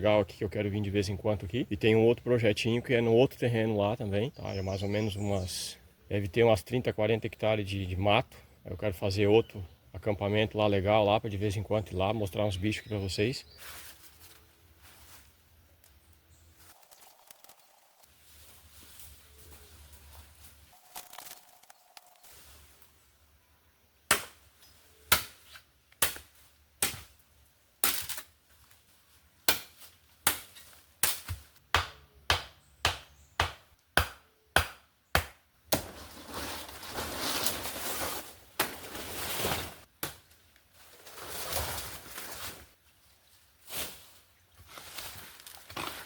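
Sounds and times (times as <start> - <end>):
swishing and rustling of vegetation: 13.2 - 23.4, 24.4 - 31.6, 35.8 - 46.0.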